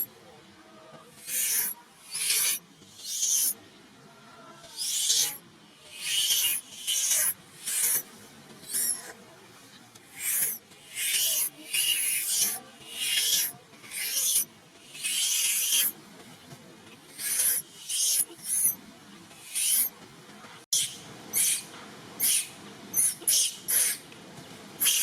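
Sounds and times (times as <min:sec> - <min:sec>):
baby monkey screaming: 0:20.8 - 0:21.6, 0:22.2 - 0:24.0.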